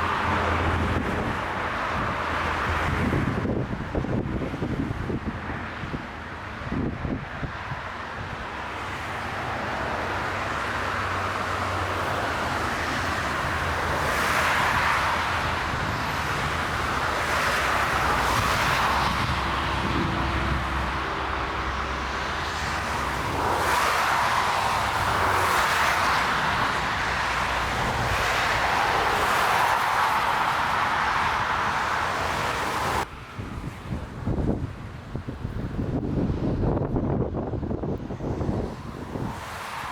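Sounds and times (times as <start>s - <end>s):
wind gusting on microphone: 0.0s - 39.9s
jet engines roaring: 8.5s - 33.1s.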